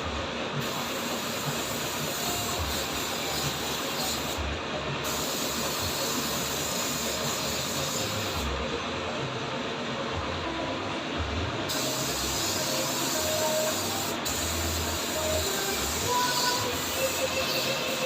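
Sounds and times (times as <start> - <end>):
paint spray gun hissing: 0.6 - 4.4, 5.0 - 8.5, 11.7 - 18.0.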